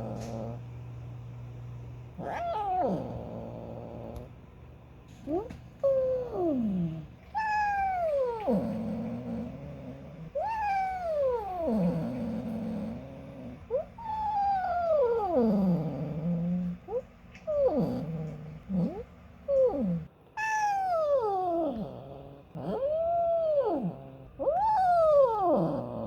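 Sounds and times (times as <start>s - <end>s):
cat meowing: 2.2s - 3.5s, 5.3s - 8.8s, 10.4s - 12.0s, 19.6s - 22.0s.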